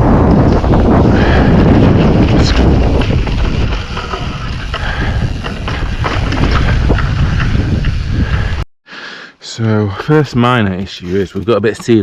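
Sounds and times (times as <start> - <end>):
bike rattling clicks and knocks: 0.0 - 8.2
bike tyres rumbling on rocks: 0.0 - 8.6
wind buffeting microphone: 0.0 - 8.6.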